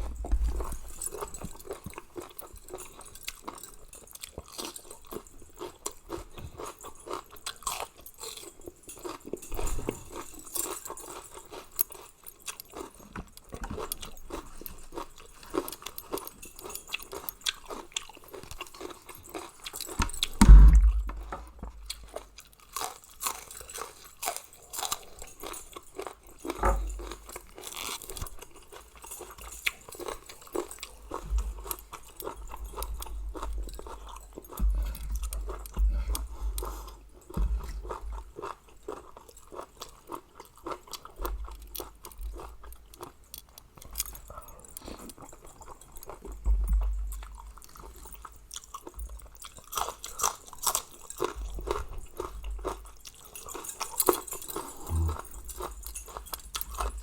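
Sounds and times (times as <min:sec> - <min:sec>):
dull low thumps: 0:00.0 - 0:00.7, 0:20.4 - 0:21.9
person chewing and crunching: 0:00.0 - 0:57.0.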